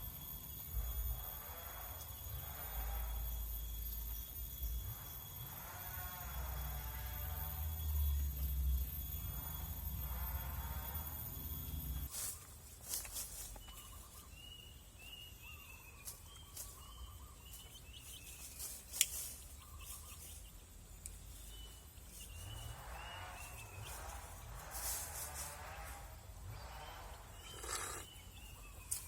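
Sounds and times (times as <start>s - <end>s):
bird chirping: 13.3s - 24.8s, 25.6s - 29.0s.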